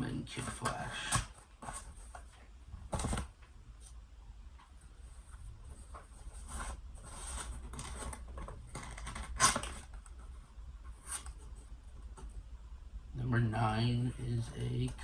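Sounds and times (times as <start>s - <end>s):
cardboard box rustling and scraping: 6.0s - 9.9s
cardboard tearing: 6.6s - 10.0s.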